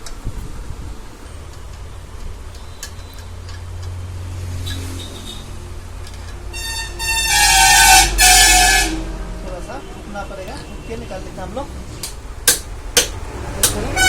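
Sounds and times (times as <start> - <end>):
low traffic hum: 0.0 - 14.0
vehicle horn: 6.4 - 10.0, 13.7 - 14.0
metallic clicks of hand tools: 12.0 - 13.9.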